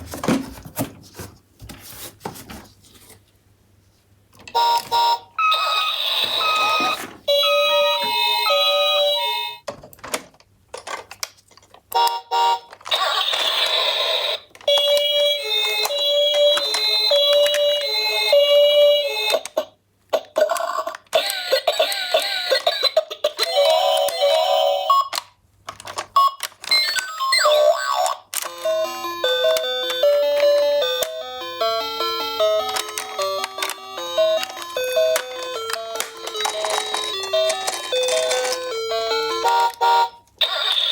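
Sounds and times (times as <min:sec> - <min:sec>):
two-tone toy siren: 0:04.6 - 0:09.5, 0:26.2 - 0:31.0, 0:34.8 - 0:40.9
wailing toy sirens: 0:04.6 - 0:09.5, 0:31.6 - 0:40.9.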